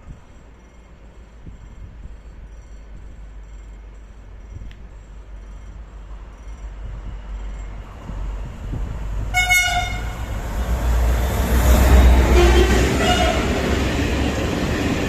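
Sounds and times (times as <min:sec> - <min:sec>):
train rumbling past: 0:00.0 - 0:15.0
train horn blast: 0:09.3 - 0:10.3, 0:12.0 - 0:13.8.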